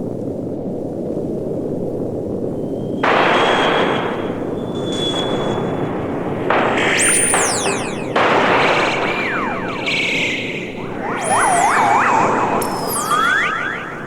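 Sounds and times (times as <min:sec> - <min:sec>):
hissing blast with high tone: 0:02.6 - 0:14.0.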